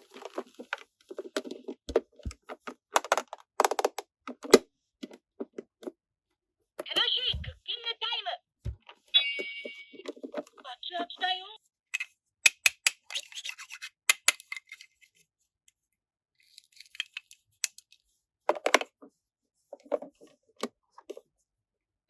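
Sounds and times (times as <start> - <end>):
plastic toy parts rustling and clicking: 0.0 - 5.9, 12.0 - 15.2, 16.4 - 19.0.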